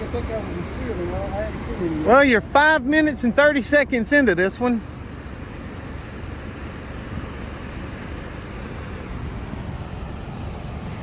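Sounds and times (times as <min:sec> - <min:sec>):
waterfall roaring: 0:00.0 - 0:05.8.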